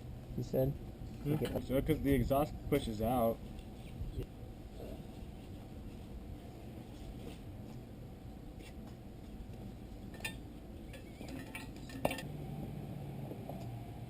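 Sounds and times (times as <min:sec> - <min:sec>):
metal parts clinking: 0:10.2 - 0:12.3.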